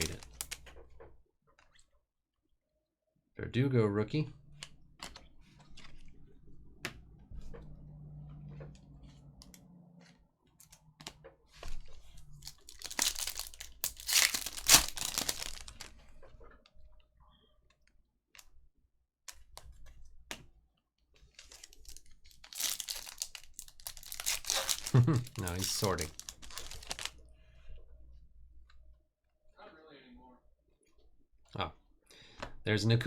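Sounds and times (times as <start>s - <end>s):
foil wrappers tearing and crinkling: 0.0s - 0.6s, 12.2s - 16.0s, 21.3s - 27.2s.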